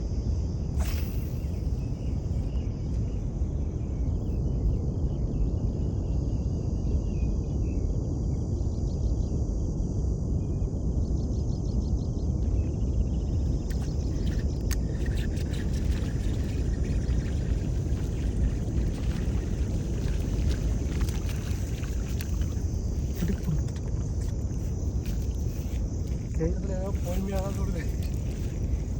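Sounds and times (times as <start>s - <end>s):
insects chirping: 0.3s - 7.2s, 12.4s - 28.9s
high insect drone: 0.4s - 7.2s, 12.5s - 28.9s
low rumble: 15.4s - 28.9s.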